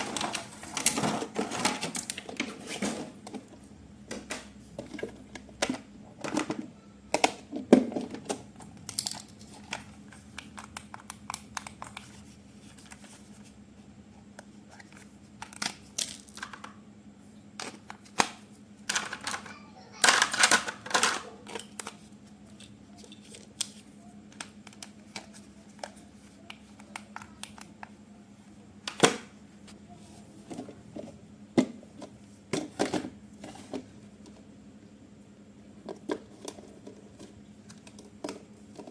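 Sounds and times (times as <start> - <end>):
faint low hum: 0.0 - 38.9
plastic parts clicking: 4.1 - 12.1, 17.6 - 27.9.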